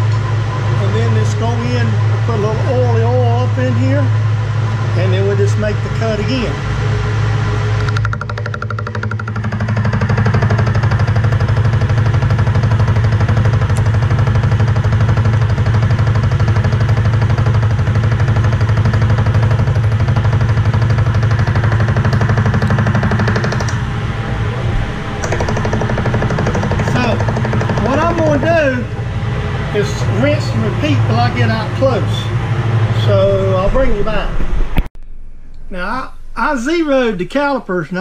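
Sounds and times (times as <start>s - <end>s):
milling machine humming: 0.0s - 34.9s
milling cutter rattling on steel: 7.8s - 23.8s, 25.2s - 28.8s.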